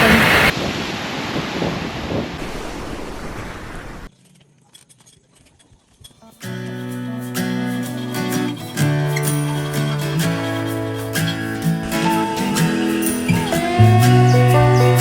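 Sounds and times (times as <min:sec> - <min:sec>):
rushing water: 0:00.0 - 0:04.1, 0:08.0 - 0:15.0
storm wind: 0:00.0 - 0:04.1.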